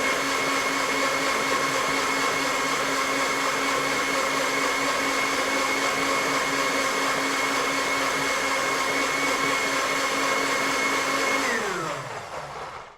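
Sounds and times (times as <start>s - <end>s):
electric blender running: 0.0s - 12.9s.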